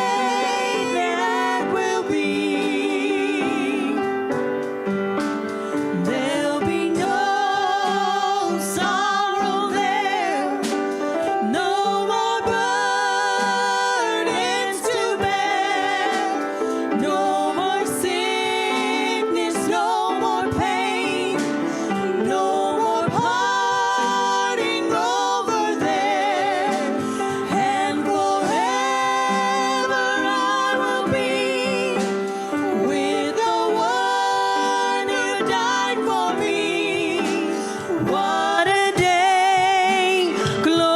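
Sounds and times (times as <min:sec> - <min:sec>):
gospel singing with accompaniment: 0:00.0 - 0:40.9.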